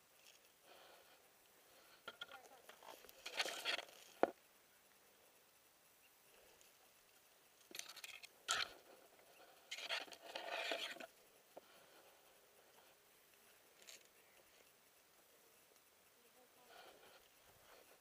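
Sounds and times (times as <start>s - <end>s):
rustling and scraping: 0.1s - 4.5s, 6.3s - 14.9s.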